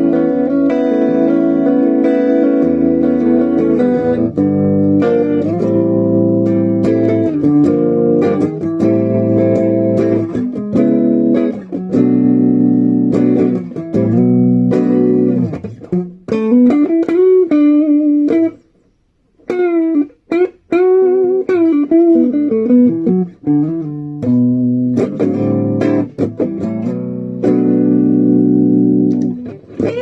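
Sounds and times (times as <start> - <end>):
electric guitar playing: 0.0 - 30.0.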